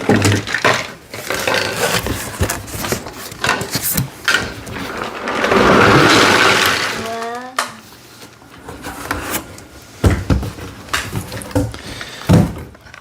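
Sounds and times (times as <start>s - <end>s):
packaging rustling: 0.4s - 7.2s.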